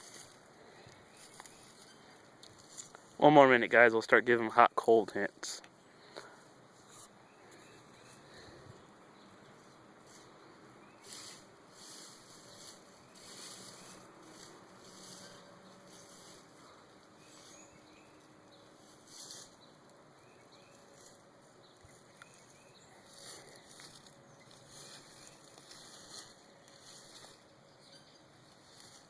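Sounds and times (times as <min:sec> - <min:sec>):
soft rustling brushes: 0:00.0 - 0:29.0
faint steady hiss: 0:08.2 - 0:22.5.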